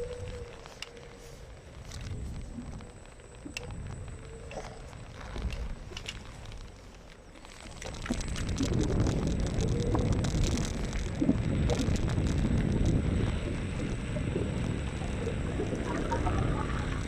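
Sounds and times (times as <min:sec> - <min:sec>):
wind buffeting microphone: 0:00.0 - 0:06.7, 0:07.7 - 0:17.0.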